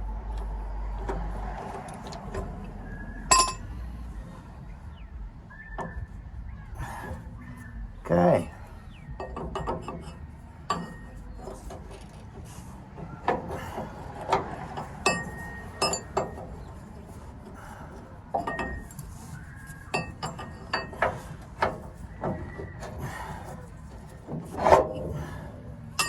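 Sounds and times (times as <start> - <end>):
hand tools clinking on metal: 3.3 - 3.7, 9.2 - 11.7, 14.4 - 16.5, 19.9 - 21.8.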